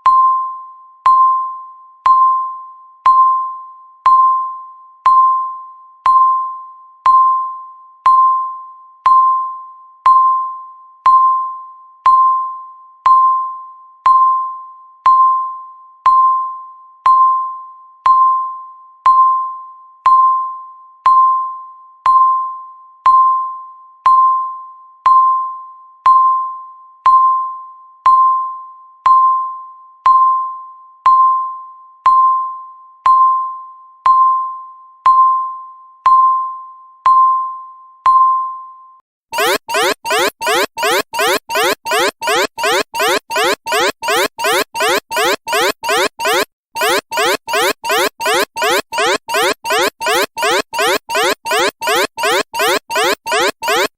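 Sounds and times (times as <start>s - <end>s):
high electronic timer beeps: 39.4s - 53.9s.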